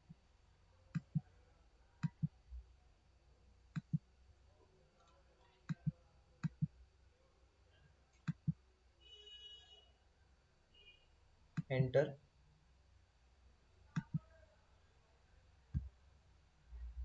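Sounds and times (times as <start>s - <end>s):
computer mouse clicking: 1.0s - 1.2s, 2.0s - 2.3s, 5.0s - 6.7s, 8.2s - 8.6s, 14.0s - 14.2s.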